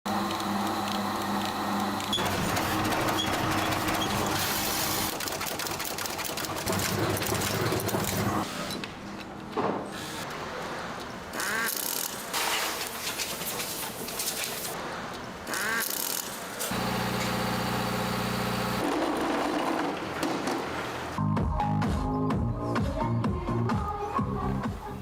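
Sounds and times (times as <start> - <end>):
machinery humming and clattering: 0.1 - 9.8.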